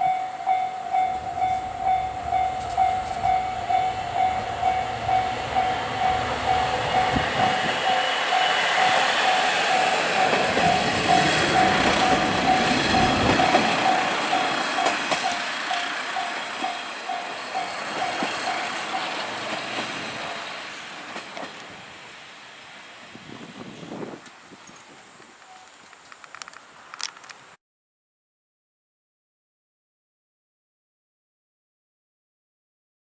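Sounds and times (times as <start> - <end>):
level crossing bell dinging: 0.0 - 18.7
train wheels clattering: 0.0 - 22.2.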